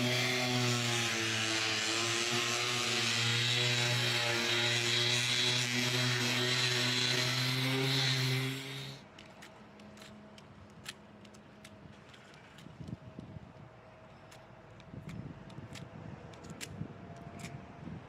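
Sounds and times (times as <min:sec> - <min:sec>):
power tool humming: 0:00.0 - 0:09.0.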